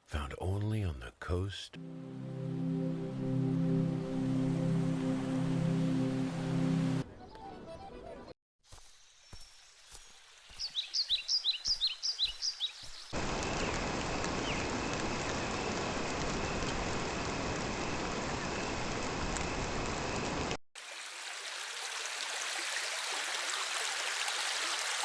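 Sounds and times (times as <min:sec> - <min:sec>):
steady rain hiss: 0:13.2 - 0:25.0
running water: 0:20.8 - 0:25.0.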